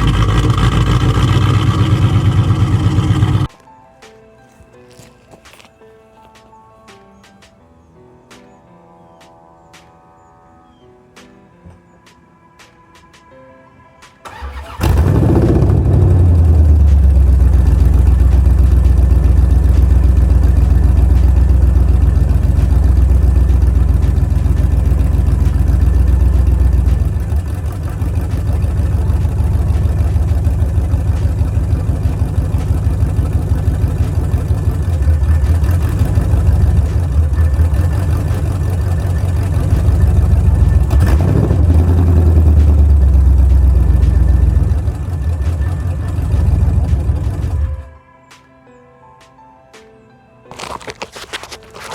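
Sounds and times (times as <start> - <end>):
car engine starting and idling: 0.0 - 3.5, 14.2 - 47.9.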